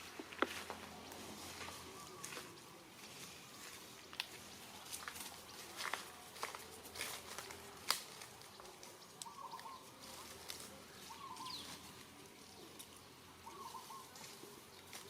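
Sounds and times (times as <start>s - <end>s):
chirping animal calls: 9.2s - 12.0s, 12.6s - 15.0s.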